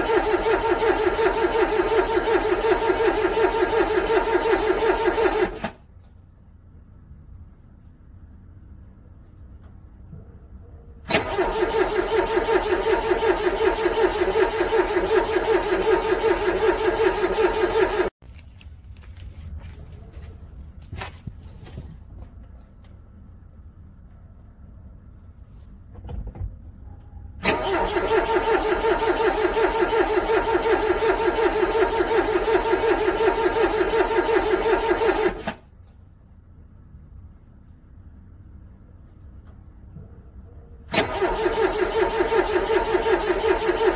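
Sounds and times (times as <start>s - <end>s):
car engine cranking: 0.0s - 5.9s, 11.0s - 18.2s, 27.4s - 35.7s, 40.8s - 43.9s.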